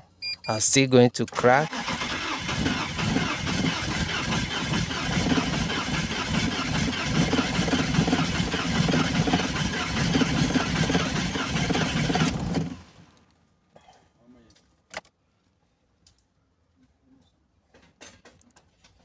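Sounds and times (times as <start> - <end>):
engine cranking by starter motor: 1.4 - 13.2.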